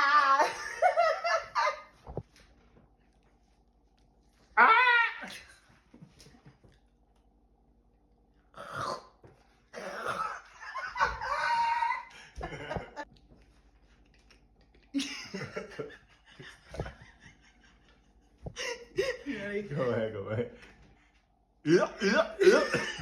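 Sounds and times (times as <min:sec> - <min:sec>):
laughter: 0:00.3 - 0:02.1, 0:10.1 - 0:13.1, 0:14.9 - 0:19.3, 0:22.1 - 0:23.0.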